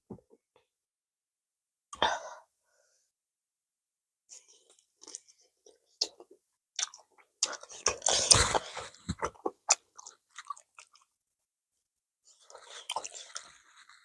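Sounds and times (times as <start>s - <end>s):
wet chewing and lip smacks: 5.0s - 6.2s.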